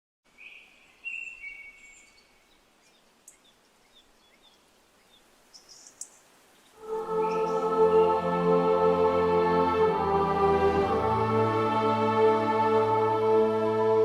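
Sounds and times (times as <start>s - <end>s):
faint birdsong: 0.3s - 8.5s
soft hiss: 0.3s - 8.6s.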